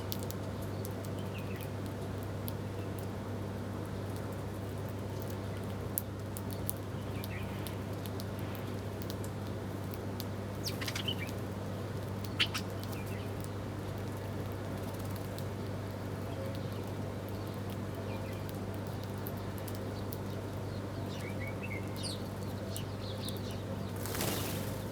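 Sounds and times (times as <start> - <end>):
birds chirping: 10.3 - 13.5.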